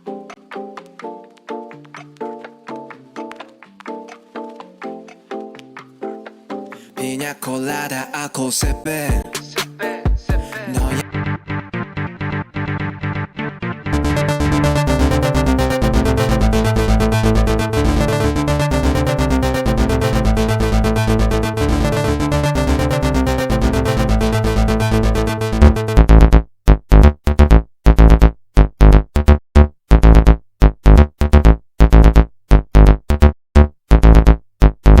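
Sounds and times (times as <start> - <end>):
electronic music with synthesizer: 0.0 - 26.4.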